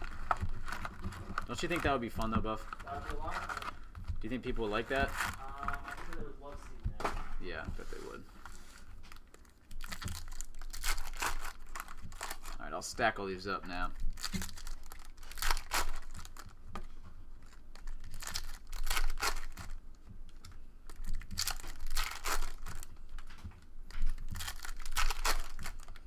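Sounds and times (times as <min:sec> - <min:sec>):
foil wrappers tearing: 0:00.0 - 0:06.6, 0:07.9 - 0:12.6, 0:13.9 - 0:16.6, 0:17.4 - 0:19.8, 0:20.9 - 0:23.3, 0:24.0 - 0:26.0
foil wrappers crinkling: 0:00.0 - 0:26.0.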